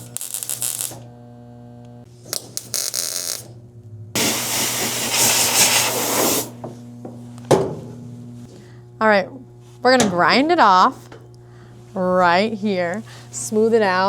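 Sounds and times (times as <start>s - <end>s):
welder crackling hiss: 0.0s - 1.0s, 4.2s - 6.6s.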